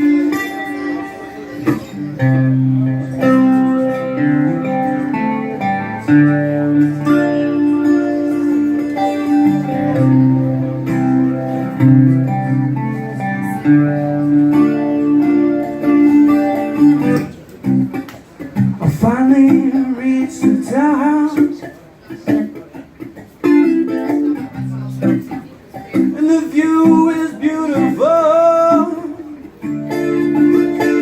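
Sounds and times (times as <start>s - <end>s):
guitar chords: 0.0s - 31.0s.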